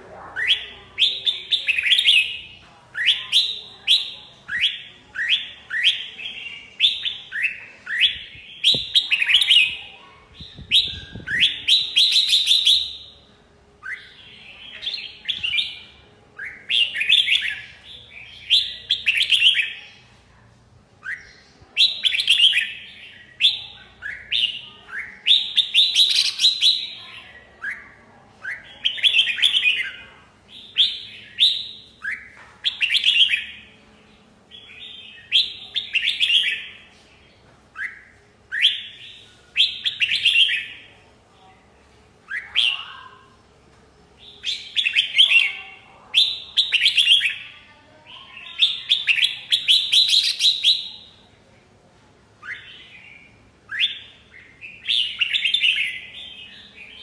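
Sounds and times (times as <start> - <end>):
bird singing whistled notes: 10.4 - 13.1.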